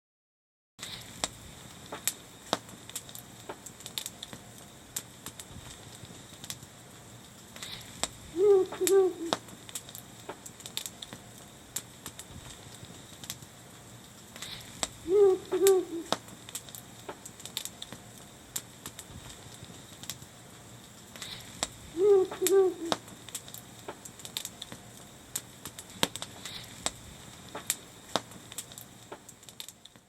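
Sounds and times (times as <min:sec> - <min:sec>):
campfire crackling and popping: 0:00.8 - 0:30.0
short call of arched notes: 0:08.4 - 0:09.4, 0:15.1 - 0:16.2, 0:22.0 - 0:23.0.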